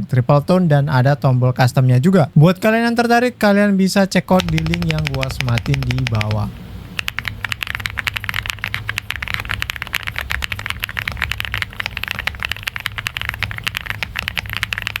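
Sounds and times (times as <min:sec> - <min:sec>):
fast mechanical keyboard typing: 0:04.4 - 0:15.0.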